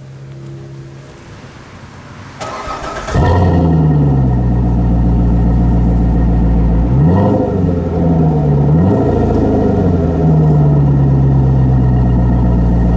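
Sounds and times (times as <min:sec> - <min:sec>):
starter motor cranking: 0:02.4 - 0:03.4
car engine revving and idling: 0:02.4 - 0:12.9.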